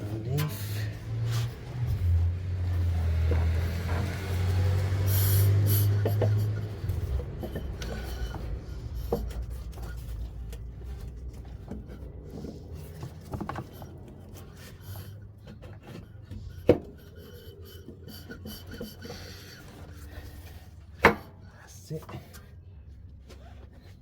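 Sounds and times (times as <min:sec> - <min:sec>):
parts rubbing and scraping: 0:00.0 - 0:21.4.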